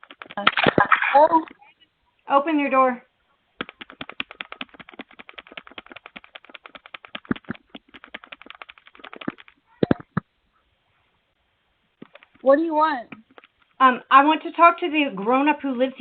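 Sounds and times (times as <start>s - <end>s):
rapid button clicks: 3.6s - 10.2s.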